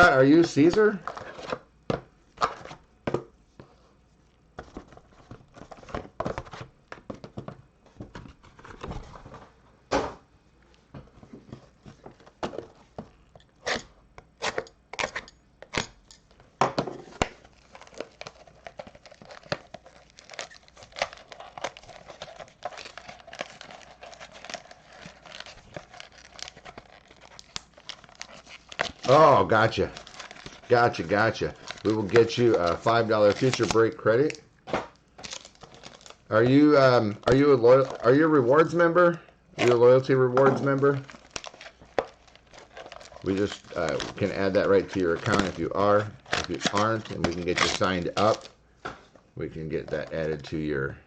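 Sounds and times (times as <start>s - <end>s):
plastic packaging crinkling: 17.1s - 38.9s, 39.6s - 48.6s.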